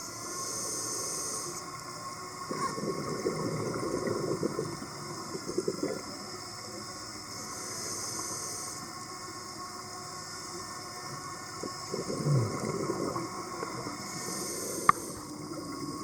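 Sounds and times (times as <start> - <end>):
regulator inhale hiss: 0.0 - 16.0
exhaled bubbles underwater: 2.4 - 6.6, 11.5 - 16.0.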